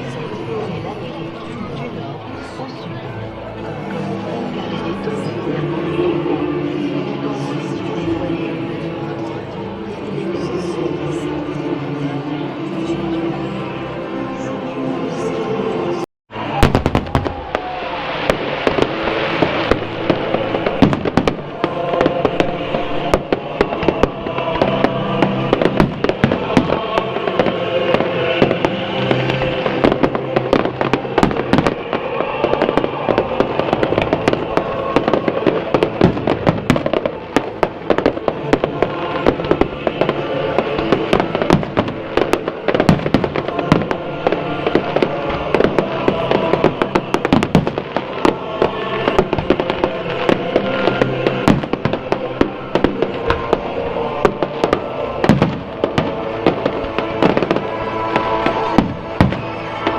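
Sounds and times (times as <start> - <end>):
music with sustained notes: 0.0 - 59.9
fireworks bangs and pops: 16.6 - 22.5, 23.1 - 31.9, 32.5 - 59.9.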